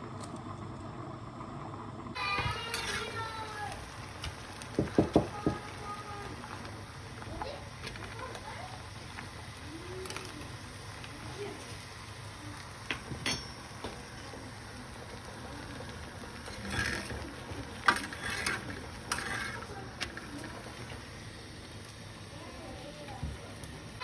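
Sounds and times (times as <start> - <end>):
kitchen utensils clattering: 2.2 - 8.8, 12.8 - 14.4, 15.2 - 21.1.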